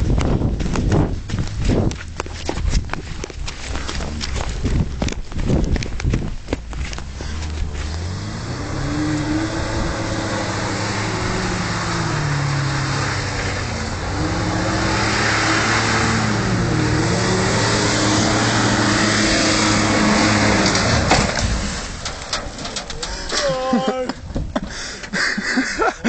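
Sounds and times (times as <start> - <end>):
tyre noise: 0.0 - 26.0
car engine revving: 6.8 - 22.7
car crashing into tree: 20.6 - 22.9
clattering: 20.6 - 23.6.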